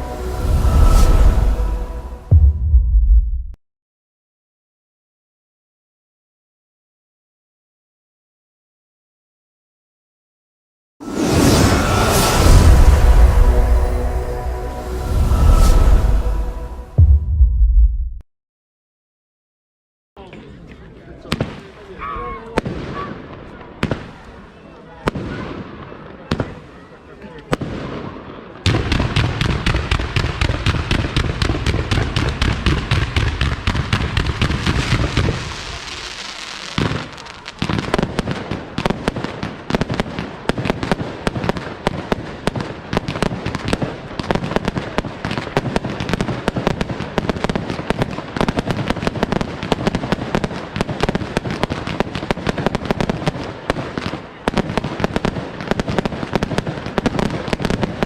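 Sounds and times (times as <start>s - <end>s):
deep firework booms: 0.0s - 3.6s, 11.0s - 18.2s, 27.5s - 53.9s
firework crackling: 11.0s - 16.8s, 29.0s - 58.0s.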